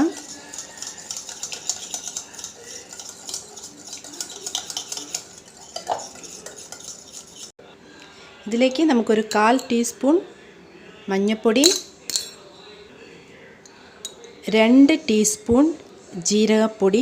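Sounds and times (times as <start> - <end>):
utensil clinking and scraping bowl: 0.0 - 7.6.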